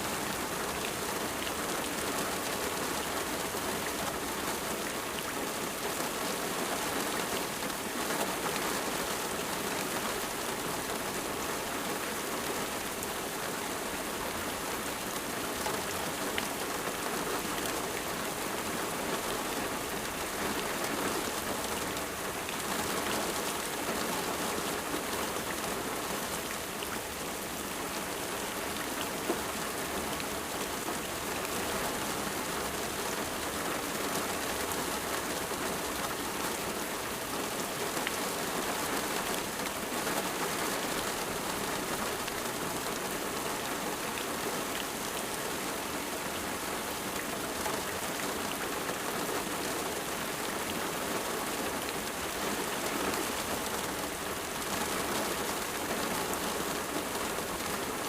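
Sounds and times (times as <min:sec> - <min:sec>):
steady rain pattering: 0:00.0 - 0:58.0.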